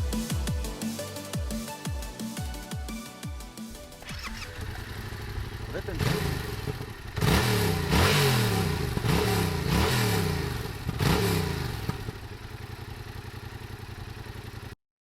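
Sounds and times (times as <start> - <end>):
engine idling: 3.7 - 14.8
engine revving: 3.8 - 12.5.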